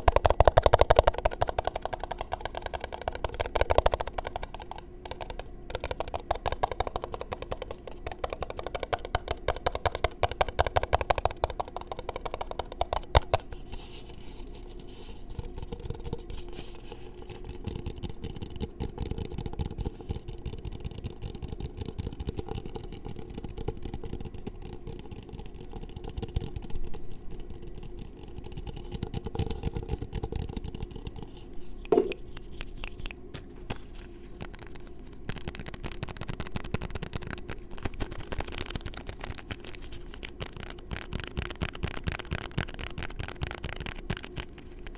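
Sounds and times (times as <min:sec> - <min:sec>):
fingers tapping microphone: 0:00.0 - 0:13.5, 0:17.2 - 0:33.2
hands rubbing near microphone: 0:13.4 - 0:17.6, 0:29.8 - 0:44.9.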